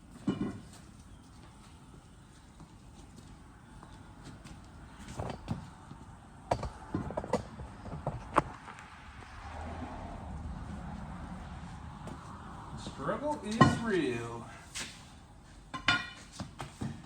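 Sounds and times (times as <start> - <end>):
knocks and clunks on tractor wheel: 6.5 - 8.6.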